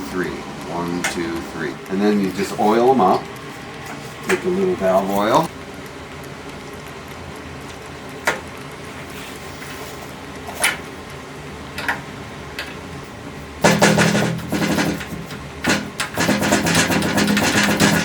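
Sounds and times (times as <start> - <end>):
music with quick percussion: 13.6 - 18.0.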